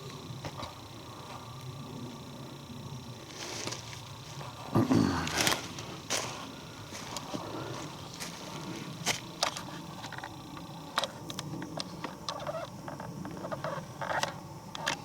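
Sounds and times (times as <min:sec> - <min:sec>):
footsteps crunching dry leaves: 0:03.3 - 0:09.3
twigs crackling and snapping: 0:05.2 - 0:11.2.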